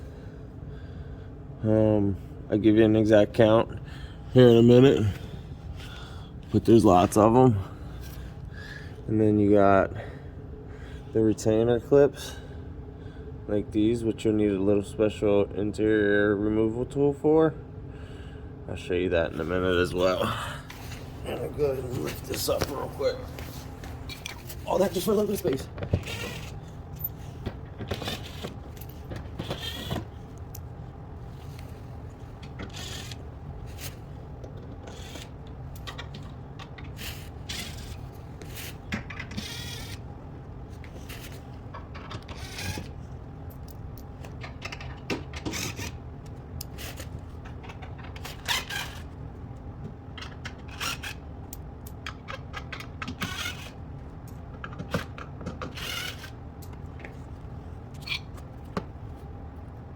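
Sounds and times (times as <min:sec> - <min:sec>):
steady low hum: 0:00.0 - 0:59.9
tool clicks taps and rattles: 0:51.5 - 0:53.3, 0:54.3 - 0:55.8.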